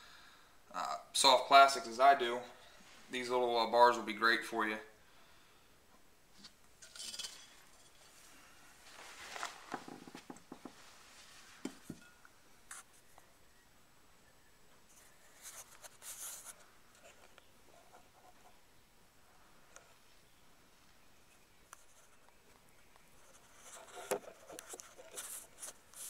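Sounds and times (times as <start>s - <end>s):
hands rustling and handling things: 6.3s - 13.3s.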